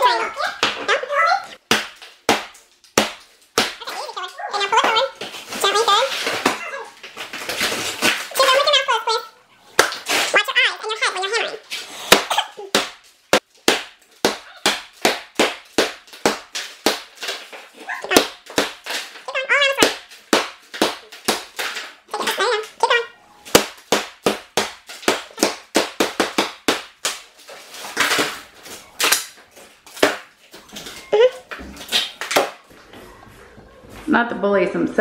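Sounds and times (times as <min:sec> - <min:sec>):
hammer striking wall and tile: 0:01.6 - 0:04.1, 0:11.8 - 0:32.7.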